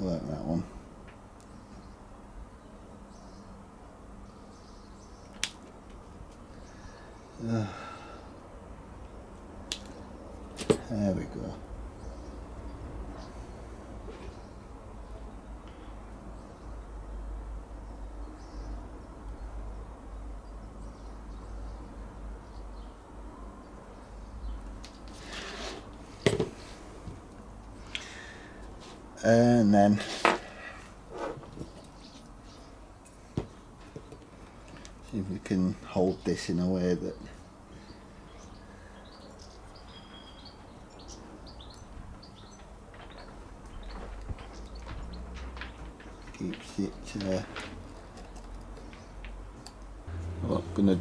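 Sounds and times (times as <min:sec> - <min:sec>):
birds chirping: 0:04.2 - 0:23.0, 0:23.6 - 0:51.0
faint bird chirps: 0:37.8 - 0:44.9
steady low rumble: 0:50.1 - 0:51.0.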